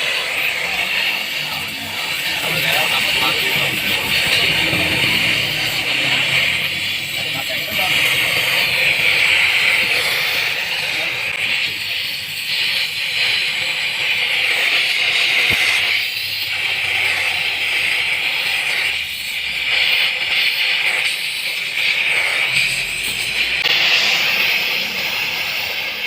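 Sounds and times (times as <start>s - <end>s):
welding arc hissing: 0.0s - 26.0s.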